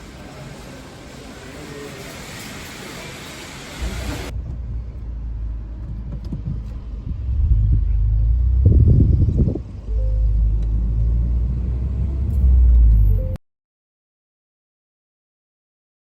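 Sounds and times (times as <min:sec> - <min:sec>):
car road noise rumble: 0:03.1 - 0:13.4.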